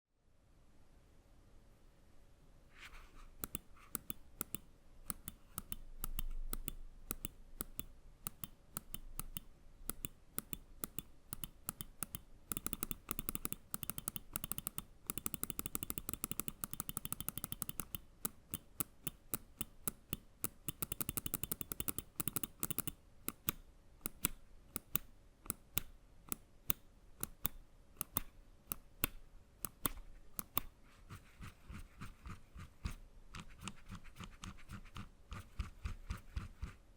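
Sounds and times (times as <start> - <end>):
mouse switches clicking: 3.4 - 30.7.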